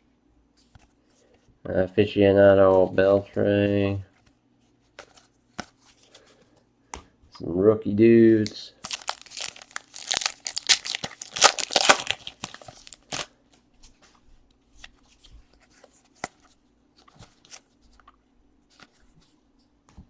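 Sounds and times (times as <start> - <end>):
wrapper tearing and crinkling: 8.8 - 13.3.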